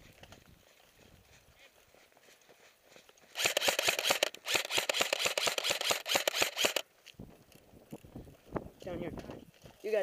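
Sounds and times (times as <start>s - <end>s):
airsoft rifle firing bursts: 3.4s - 6.8s.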